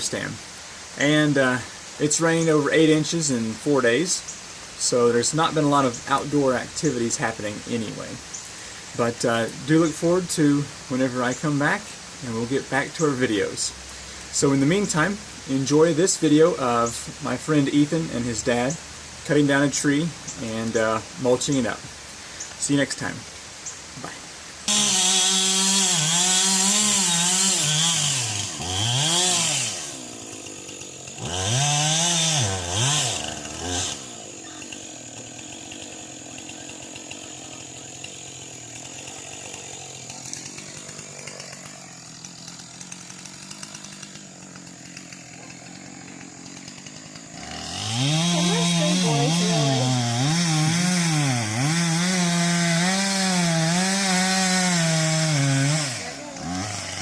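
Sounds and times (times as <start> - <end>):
chainsaw cutting wood: 0.0 - 57.0.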